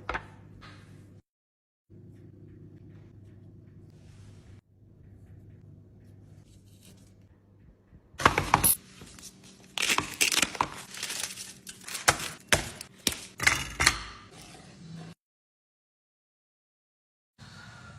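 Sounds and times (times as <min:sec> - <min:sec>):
rustling crinkling noise: 0:08.8 - 0:12.4.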